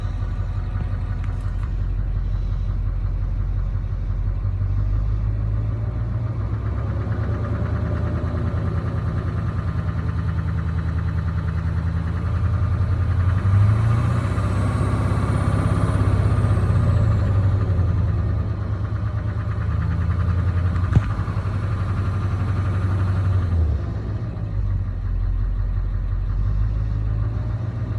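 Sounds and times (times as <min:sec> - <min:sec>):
rapid engine ticking: 0:00.0 - 0:06.0, 0:16.2 - 0:23.7
diesel engine running: 0:00.0 - 0:27.9.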